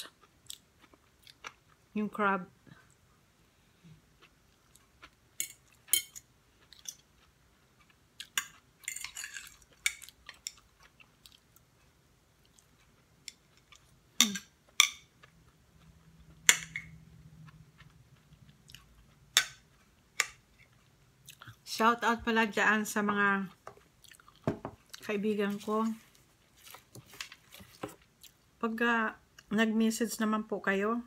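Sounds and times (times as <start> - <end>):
chewing and sucking: 17.1 - 20.0, 23.8 - 25.1.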